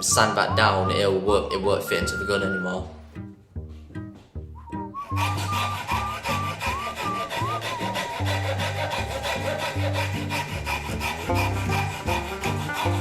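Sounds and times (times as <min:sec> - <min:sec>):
wood being sanded: 0:05.0 - 0:13.0.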